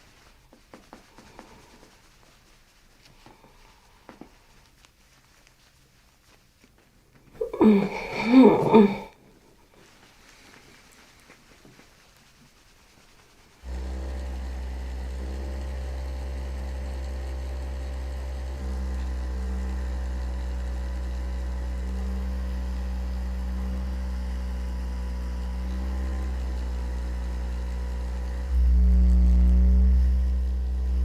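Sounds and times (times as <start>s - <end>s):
motor humming: 13.6s - 31.0s.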